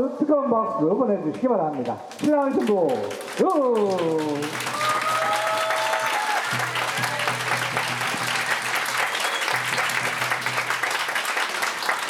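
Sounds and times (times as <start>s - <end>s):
crowd applauding: 2.1s - 12.0s.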